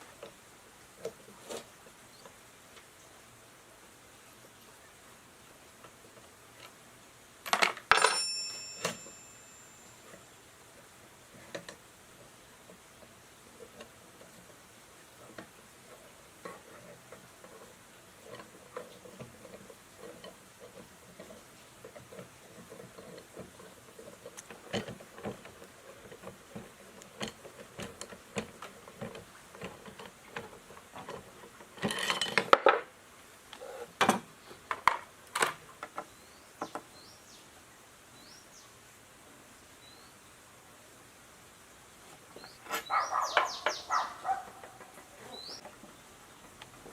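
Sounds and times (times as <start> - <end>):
metal tools clinking: 7.5 - 10.2, 31.8 - 32.6
metal parts clattering: 31.8 - 32.6
faint bird chirps: 42.4 - 44.4, 45.2 - 45.6.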